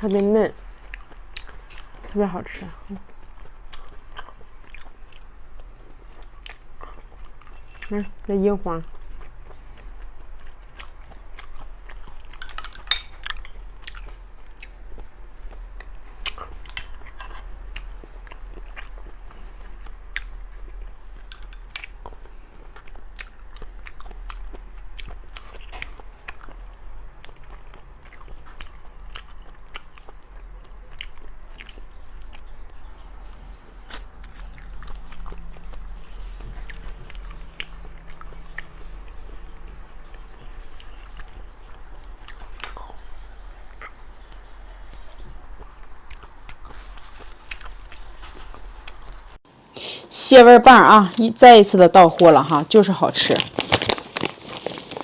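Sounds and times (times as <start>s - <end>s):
chewing and biting: 0.8s - 2.2s, 3.0s - 32.8s, 33.9s - 49.3s, 53.4s - 55.0s
wet mouth clicks: 33.9s - 34.5s.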